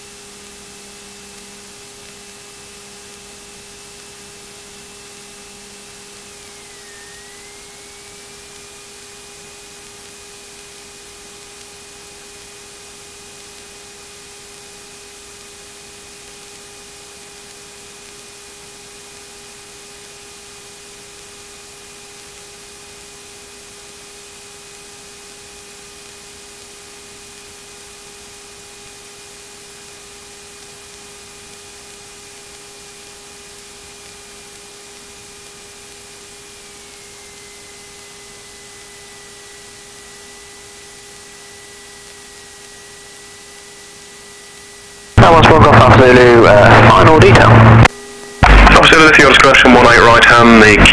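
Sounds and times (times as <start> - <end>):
faint whining tones: 4.5 - 8.8
intercom audio hiss: 45.2 - 50.9.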